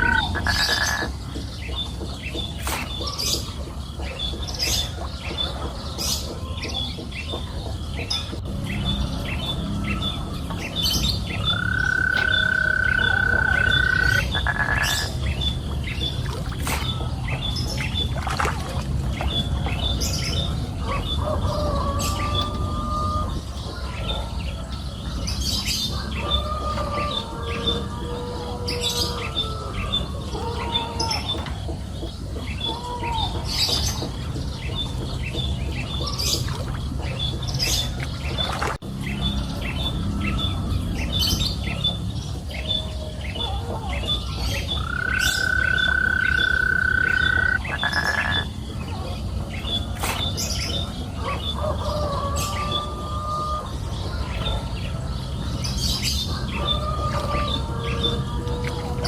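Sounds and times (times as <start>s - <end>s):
whistled bird calls: 0.0s - 1.1s
birds chirping: 0.0s - 59.0s.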